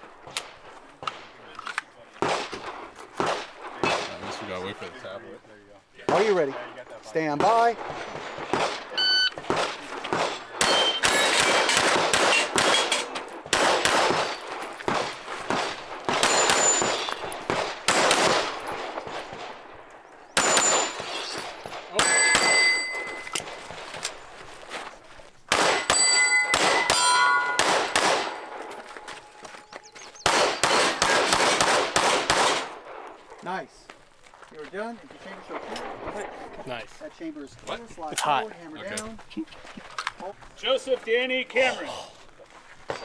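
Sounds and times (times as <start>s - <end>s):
steel targets ringing: 7.1s - 14.9s, 16.0s - 19.1s, 20.3s - 23.7s, 25.5s - 31.6s
handgun shots: 7.4s - 24.2s, 25.5s - 33.0s.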